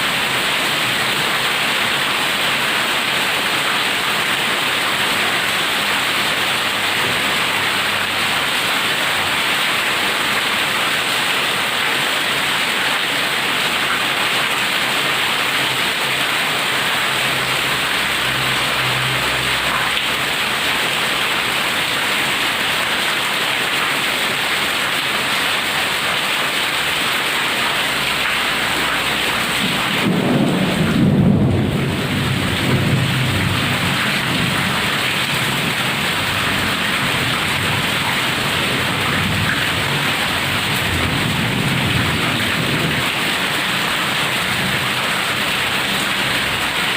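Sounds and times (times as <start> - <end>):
heavy rain pouring: 0.0 - 46.9
low roll of thunder: 29.5 - 34.8.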